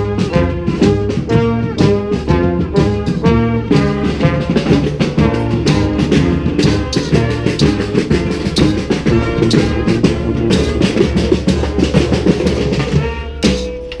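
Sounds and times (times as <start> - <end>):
brass band playing: 0.0 - 13.9
bass drum and snare: 0.0 - 14.0.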